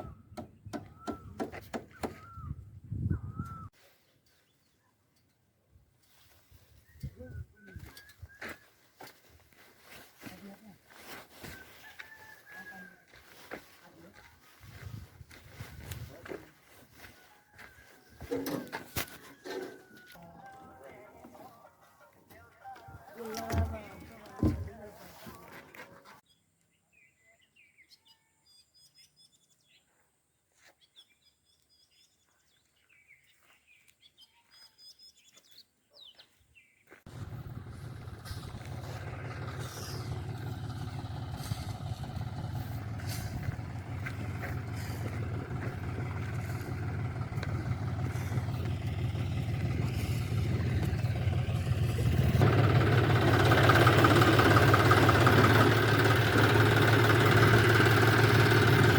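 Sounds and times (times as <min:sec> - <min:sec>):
faint bird chirps: 0:00.0 - 0:05.0, 0:06.2 - 0:08.9
motor engine running: 0:23.2 - 0:25.5, 0:37.1 - 0:58.9.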